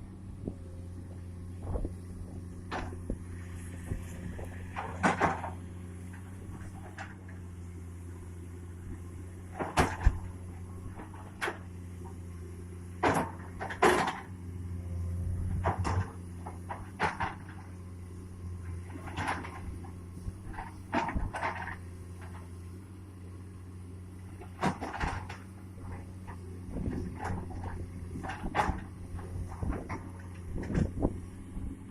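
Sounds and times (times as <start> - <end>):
excavator diesel engine: 0.0 - 31.9
metal clanks and knocks: 3.9 - 7.2, 9.5 - 10.3, 13.0 - 14.3, 15.5 - 17.7, 24.4 - 31.1.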